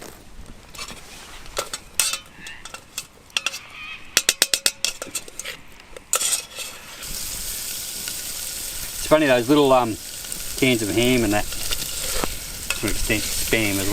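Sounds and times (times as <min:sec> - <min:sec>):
utensil clinking on metal cookware: 0:01.6 - 0:03.6, 0:04.2 - 0:06.9, 0:10.2 - 0:13.9.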